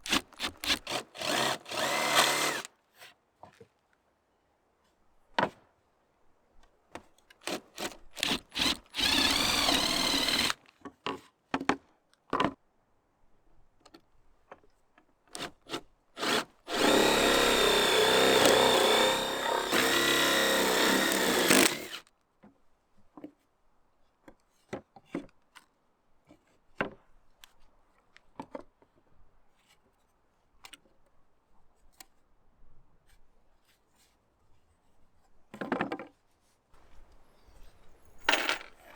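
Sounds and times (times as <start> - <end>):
power tool cutting wood: 0.1 - 2.7, 7.5 - 10.6, 16.2 - 22.0.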